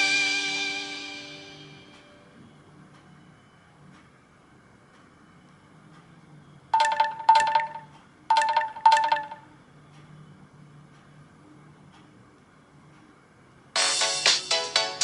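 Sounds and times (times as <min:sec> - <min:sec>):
bell-like phone chime: 0:06.8 - 0:09.5.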